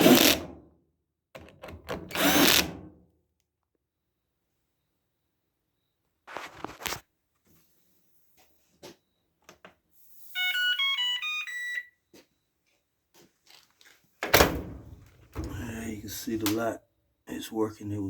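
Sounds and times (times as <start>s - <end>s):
dryer beeping chime: 10.4s - 12.1s.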